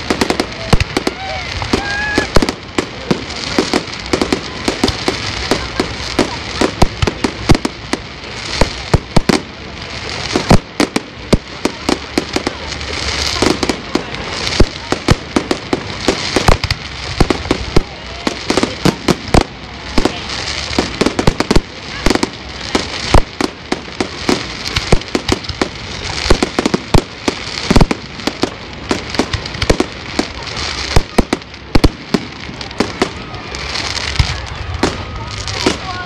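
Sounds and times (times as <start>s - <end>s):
fireworks bangs: 0.0s - 36.0s
fireworks crackling: 0.0s - 36.0s.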